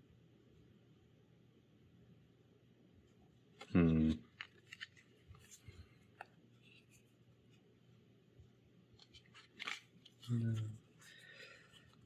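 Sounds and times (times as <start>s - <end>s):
trading cards being handled: 3.6s - 7.6s, 9.0s - 12.0s.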